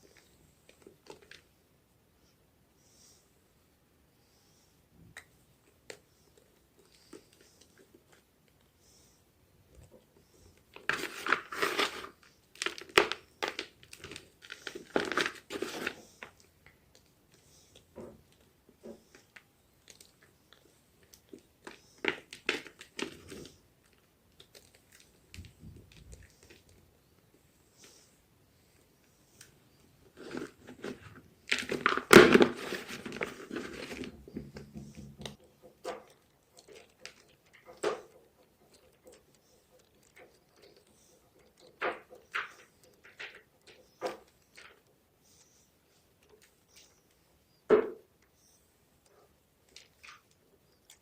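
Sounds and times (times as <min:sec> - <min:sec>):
chalk crunching and crumbling: 0:10.7 - 0:16.4.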